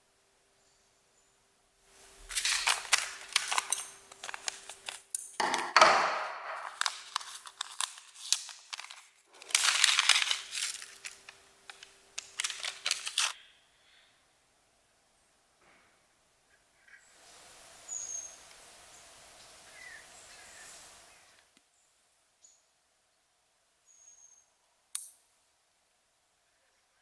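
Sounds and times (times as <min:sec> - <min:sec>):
rustling rip: 0:02.2 - 0:05.1, 0:06.1 - 0:13.4
packaging crinkling: 0:02.2 - 0:13.4.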